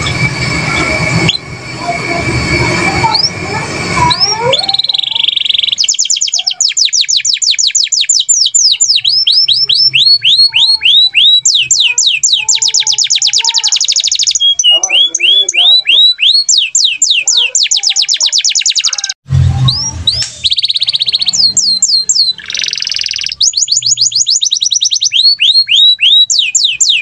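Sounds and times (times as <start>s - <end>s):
noisy rumbling background: 0.0s - 6.6s, 19.3s - 22.4s
canary singing: 0.0s - 27.0s.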